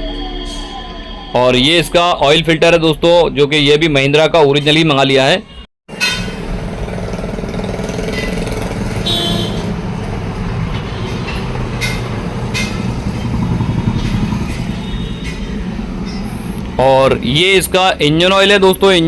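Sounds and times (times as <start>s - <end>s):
engine running: 5.9s - 18.2s.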